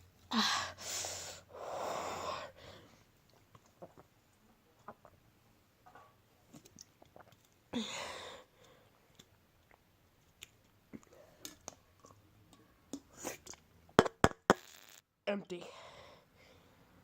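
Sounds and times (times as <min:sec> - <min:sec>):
person gulping soda: 0:03.4 - 0:05.2, 0:06.5 - 0:07.7.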